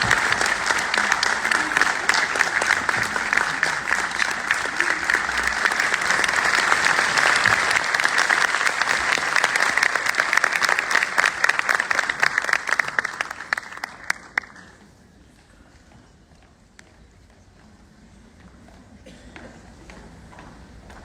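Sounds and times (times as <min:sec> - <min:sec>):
audience applauding: 0:00.0 - 0:14.8.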